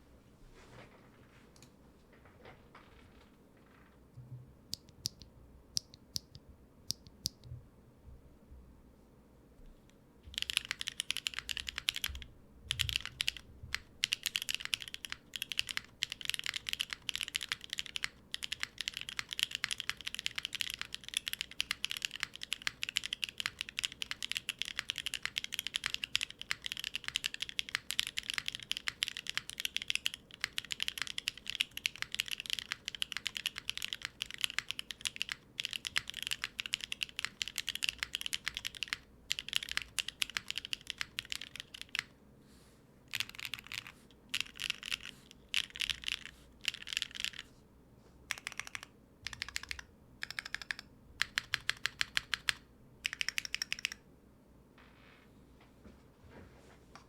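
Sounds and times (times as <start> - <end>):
mechanical keyboard typing: 10.3 - 42.1, 43.1 - 47.4, 48.3 - 54.0.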